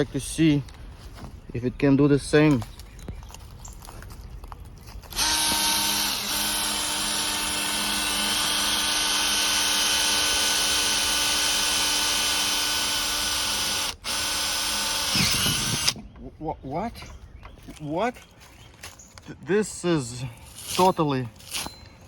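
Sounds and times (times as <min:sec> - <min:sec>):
cordless drill drilling into metal: 0:05.1 - 0:16.0.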